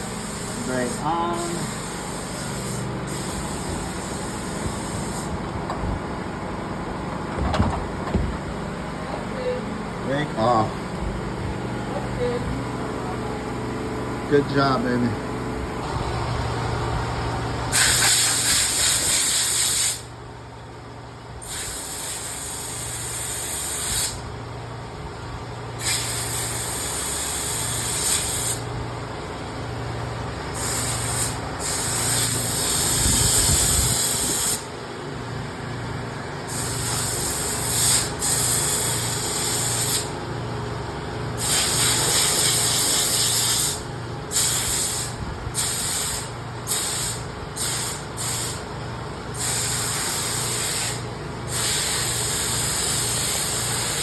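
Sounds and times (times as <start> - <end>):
air blow gun hissing: 0.0 - 5.4, 17.7 - 20.1, 21.4 - 24.2, 25.8 - 28.6, 30.5 - 34.7, 36.5 - 40.2, 41.4 - 48.7, 49.3 - 54.0
low machine hum: 0.0 - 17.8.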